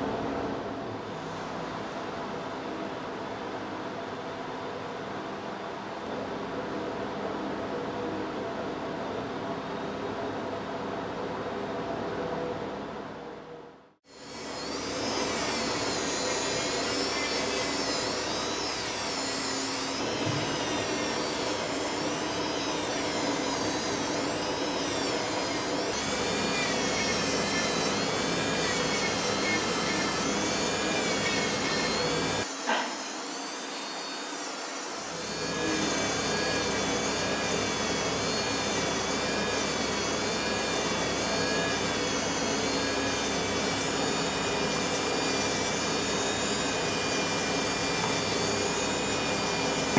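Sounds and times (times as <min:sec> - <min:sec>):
small power tool motor: 0:14.1 - 0:49.9.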